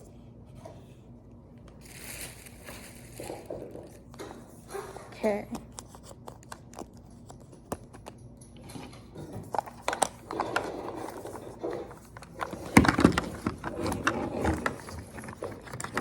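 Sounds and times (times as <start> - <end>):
plastic packaging crinkling: 1.8 - 4.1.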